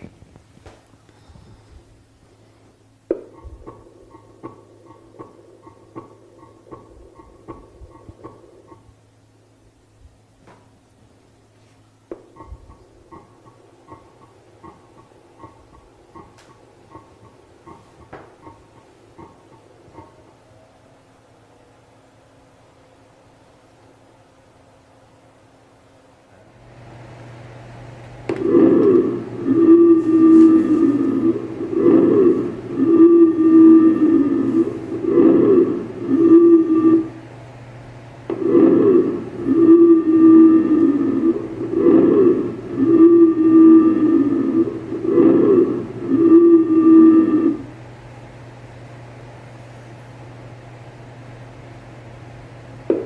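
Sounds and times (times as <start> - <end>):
faint steady hiss: 0.0 - 53.0
low even hum: 0.0 - 53.0
heartbeat lub-dub: 3.1 - 8.9, 12.2 - 20.2, 28.2 - 37.3, 37.9 - 47.6.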